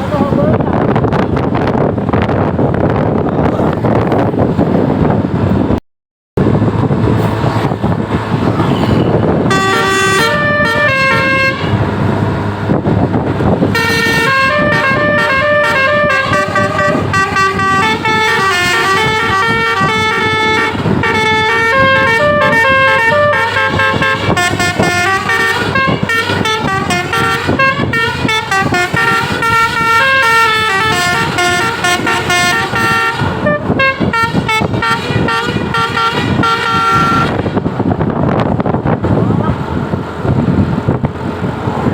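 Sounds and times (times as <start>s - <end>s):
road and wind noise: 0.0s - 41.9s
musical air horn tune: 8.8s - 11.8s, 13.7s - 37.5s.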